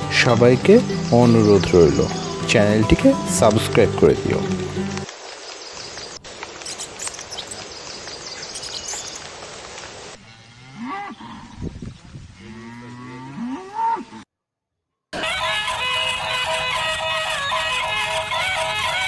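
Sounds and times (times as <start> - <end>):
steady rushing hiss: 4.2 - 10.2
cattle mooing: 12.4 - 14.2.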